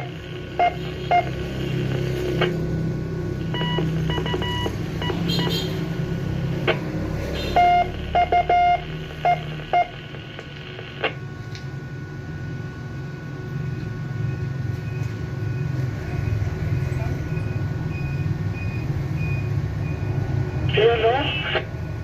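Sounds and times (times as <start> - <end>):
morse code beeps: 0.0 - 2.6, 3.4 - 5.9, 6.6 - 11.2
steady low hum: 0.0 - 19.9.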